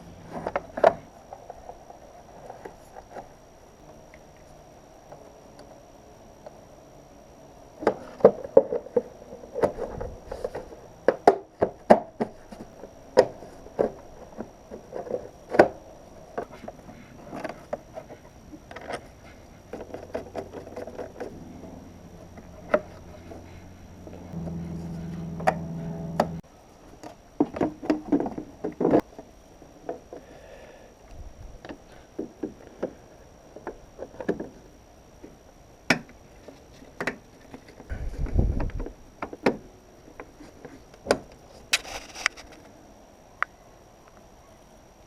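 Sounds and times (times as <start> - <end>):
low hum: 19.2 - 26.5.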